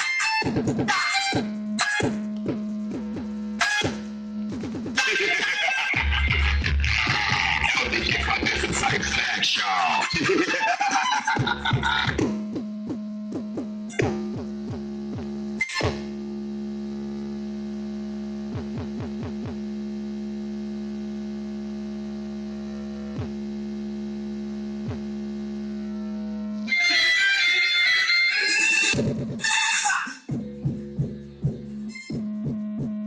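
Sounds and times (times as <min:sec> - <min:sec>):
electronic beat from speaker box: 0:00.0 - 0:10.6, 0:11.2 - 0:33.0
held synth drone: 0:10.0 - 0:29.6, 0:30.2 - 0:33.0.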